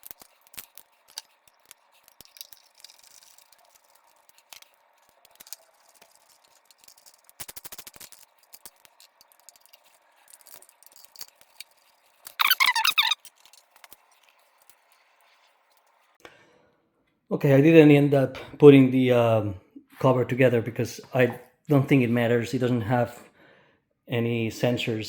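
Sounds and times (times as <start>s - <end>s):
clicks and rattle of hands working: 0.0s - 15.0s
pallet jack warbling whine: 12.4s - 13.2s.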